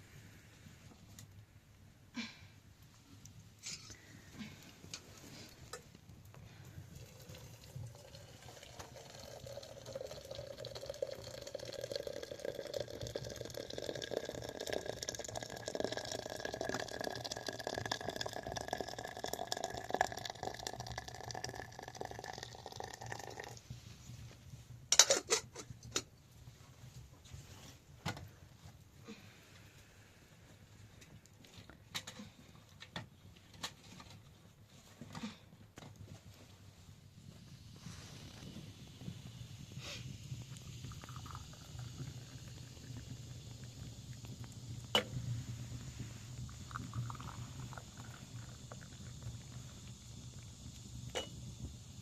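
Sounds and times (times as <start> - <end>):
water pouring into a container: 6.9 - 23.7, 40.0 - 51.2.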